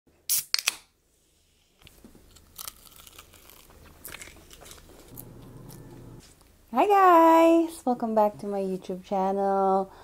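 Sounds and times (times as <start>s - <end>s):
crunching crispy fried food: 2.2s - 5.2s.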